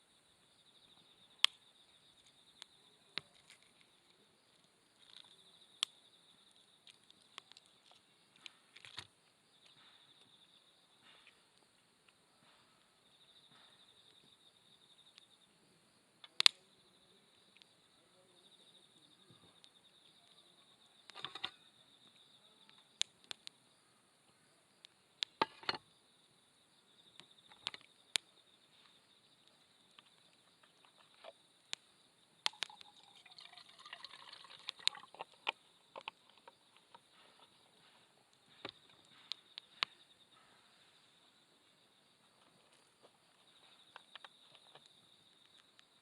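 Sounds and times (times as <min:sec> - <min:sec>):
insects chirring: 0:00.0 - 0:46.0
campfire crackling and popping: 0:01.4 - 0:10.4, 0:16.2 - 0:17.8, 0:22.7 - 0:23.6, 0:24.8 - 0:25.8, 0:27.1 - 0:37.6, 0:38.6 - 0:40.0.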